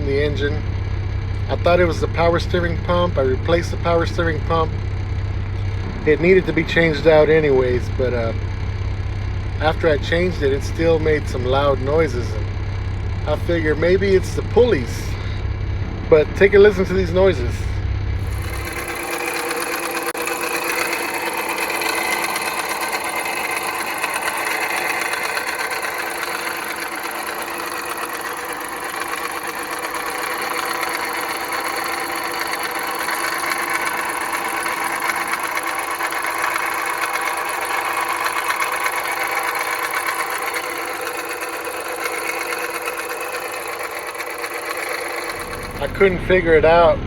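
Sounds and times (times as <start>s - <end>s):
car engine running: 0.0s - 47.0s
rapid metallic clanking: 15.8s - 46.4s.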